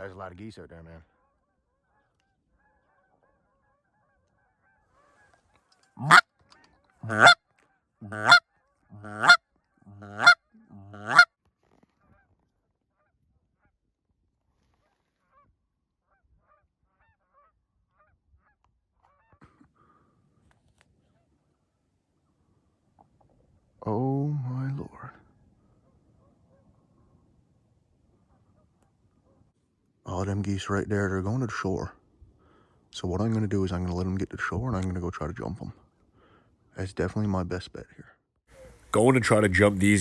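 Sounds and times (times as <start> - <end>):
goose honking: 6.0 - 6.2, 7.0 - 7.4, 8.0 - 8.4, 9.0 - 11.3, 38.6 - 40.0.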